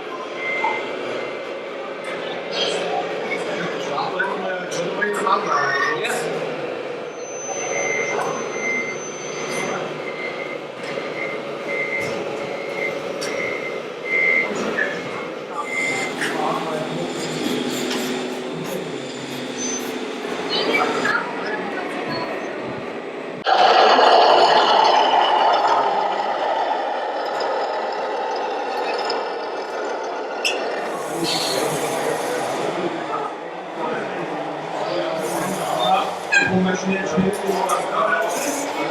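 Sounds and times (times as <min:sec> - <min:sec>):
reversing beeper: 0:07.1 - 0:21.2
steady background hum: 0:10.1 - 0:38.9.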